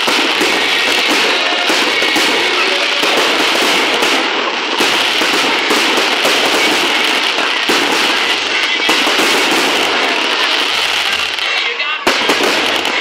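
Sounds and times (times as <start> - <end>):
fireworks crackling and popping: 0.0 - 13.0.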